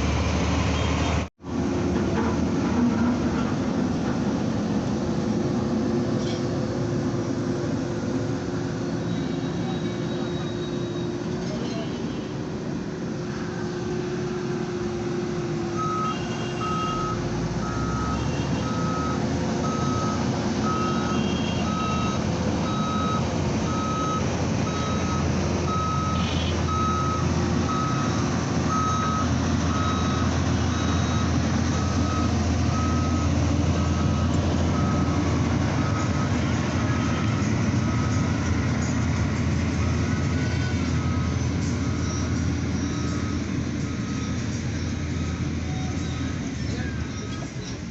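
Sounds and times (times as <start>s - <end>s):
reversing alarm beeping: 9.0s - 11.2s, 15.7s - 46.6s.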